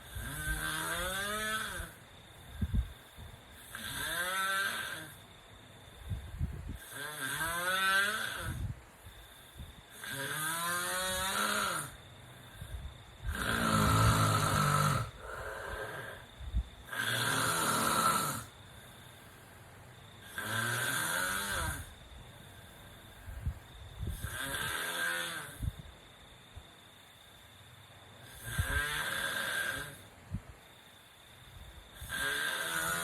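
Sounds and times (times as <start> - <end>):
person snoring: 0.0 - 2.0, 3.6 - 5.2, 6.8 - 8.7, 9.9 - 12.0, 13.2 - 18.6, 20.2 - 22.0, 24.1 - 25.7, 28.3 - 30.0, 32.0 - 33.0.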